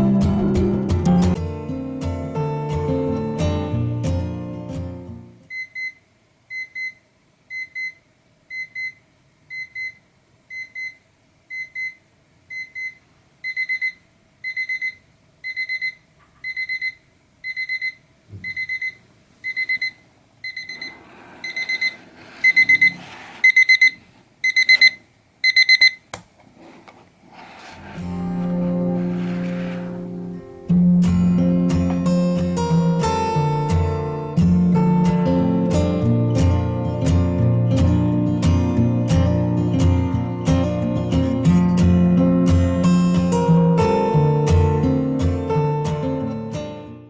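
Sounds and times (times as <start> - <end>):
electronic alarm clock beeps: 5.5 - 26.0.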